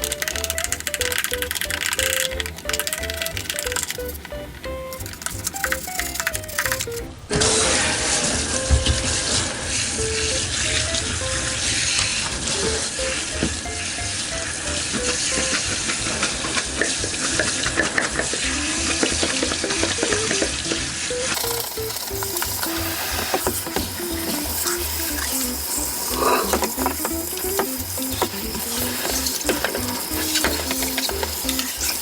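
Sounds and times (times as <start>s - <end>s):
light background music: 0.0s - 32.0s
toothbrush scrubbing: 5.0s - 7.0s, 21.4s - 32.0s.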